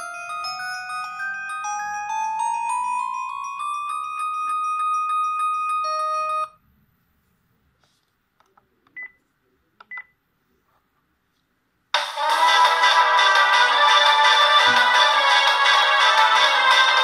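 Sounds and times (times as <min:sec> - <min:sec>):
phone ringtone melody: 0:00.0 - 0:06.6.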